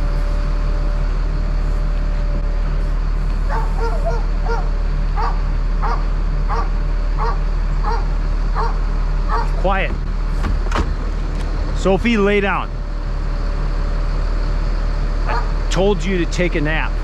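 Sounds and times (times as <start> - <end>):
truck engine running: 0.0 - 17.0
dog barking: 3.5 - 9.6, 15.3 - 15.6.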